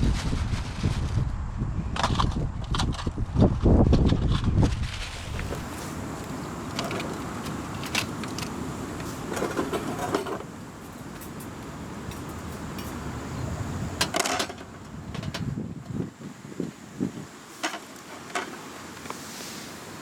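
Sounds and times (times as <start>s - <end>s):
steady low rumble: 0.0s - 16.2s
handling noise: 4.9s - 16.1s.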